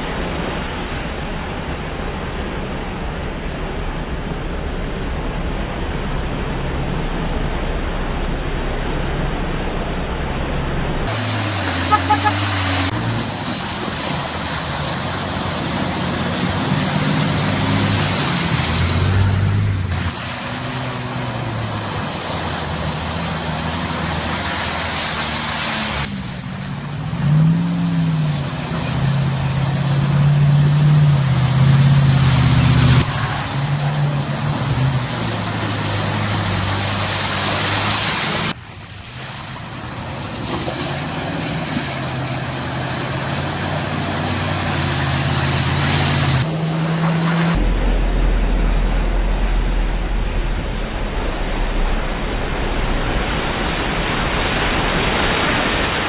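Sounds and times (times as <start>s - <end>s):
loud steady rushing noise: 0.0s - 56.0s
off-road engines revving: 11.0s - 38.6s, 39.2s - 47.8s.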